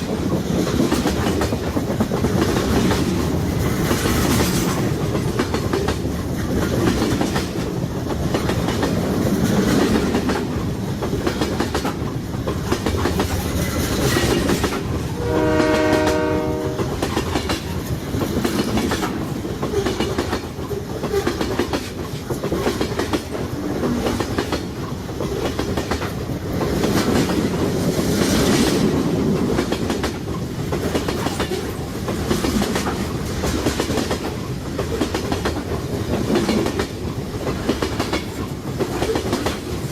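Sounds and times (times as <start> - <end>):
freight train wagons clattering: 0.0 - 39.9
train horn blast: 15.2 - 17.0.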